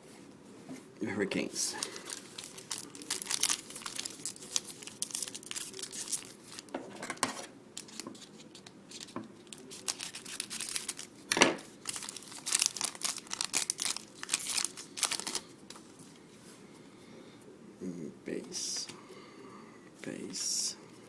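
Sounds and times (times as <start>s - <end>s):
wrapper tearing and crinkling: 1.7s - 6.7s, 7.8s - 15.5s.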